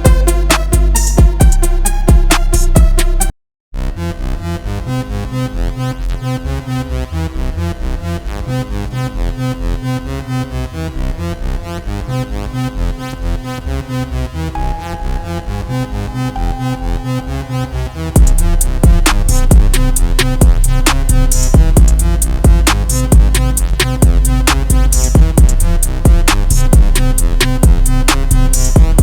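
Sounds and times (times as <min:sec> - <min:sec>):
pulsing synthesizer pattern: 0:14.6 - 0:20.7
synth bass line: 0:14.6 - 0:27.0.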